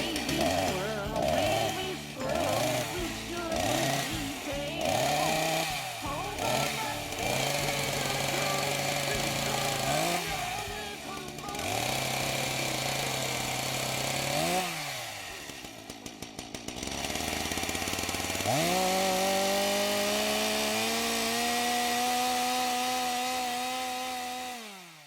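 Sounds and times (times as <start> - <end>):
chainsaw engine revving: 0.0 - 25.0.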